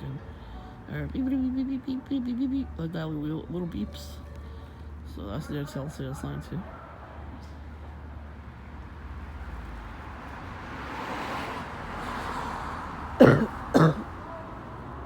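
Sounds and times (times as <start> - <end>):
outdoor noise: 0.0 - 15.0
man coughing: 13.2 - 14.1.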